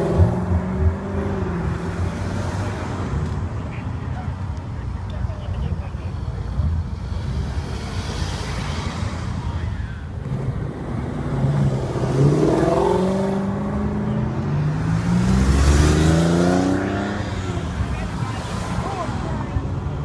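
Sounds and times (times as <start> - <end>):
car engine accelerating hard: 10.2 - 19.9.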